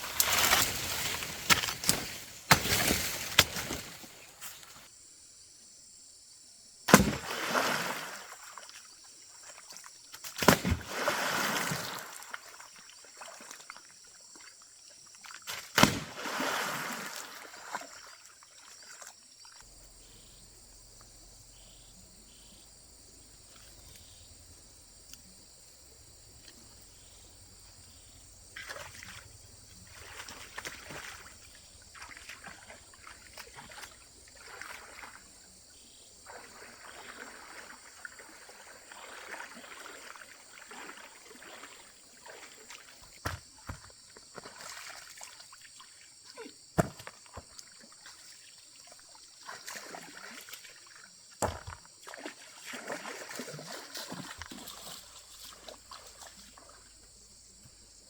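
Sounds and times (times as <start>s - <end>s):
water sloshing and trickling: 0.0s - 4.9s, 7.0s - 19.6s, 28.4s - 58.0s.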